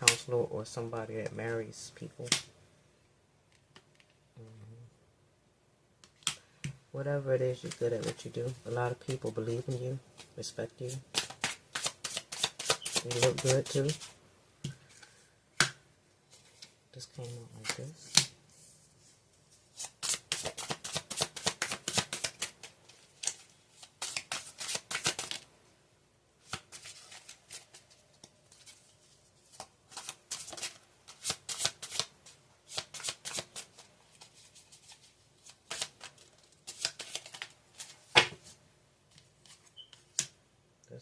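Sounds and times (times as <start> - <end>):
cards being shuffled: 7.6 - 10.3, 10.9 - 14.1, 19.7 - 25.5, 26.4 - 32.1, 32.7 - 38.4.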